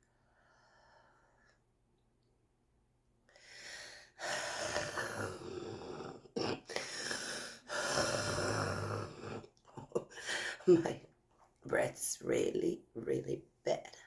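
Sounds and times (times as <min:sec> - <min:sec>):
wheezy congested breathing: 0:03.3 - 0:09.5.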